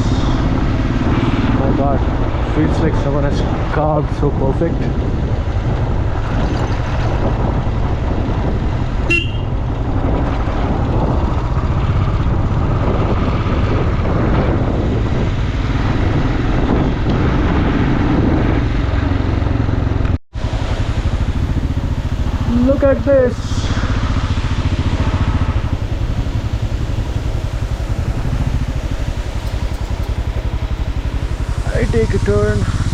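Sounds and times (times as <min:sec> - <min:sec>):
wind noise: 0:00.0 - 0:20.2, 0:20.9 - 0:32.9
motorcycle engine: 0:00.0 - 0:32.9
motorcycle horn toot: 0:09.0 - 0:09.6.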